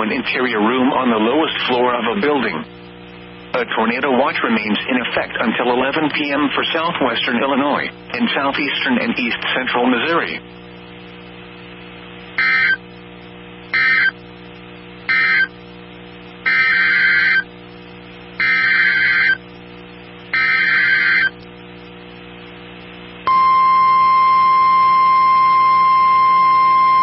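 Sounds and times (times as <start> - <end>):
steady low hum: 0.0 - 27.0
buzzing digital data bursts: 12.3 - 12.8, 13.7 - 14.2, 15.1 - 15.7, 16.4 - 17.5, 18.4 - 19.6, 20.3 - 21.9
loud steady alert tone: 12.4 - 12.8, 13.7 - 14.2, 15.1 - 15.5, 16.4 - 17.5, 18.4 - 19.4, 20.3 - 21.4, 23.3 - 27.0.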